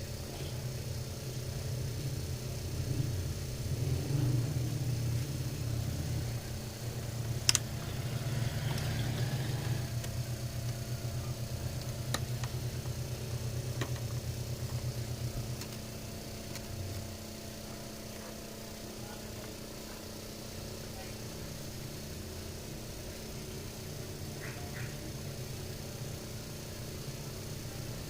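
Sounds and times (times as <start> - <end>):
motor pulsing rumble and hum: 0.0 - 28.0
sharp clicks: 7.3 - 7.8, 8.7 - 9.0.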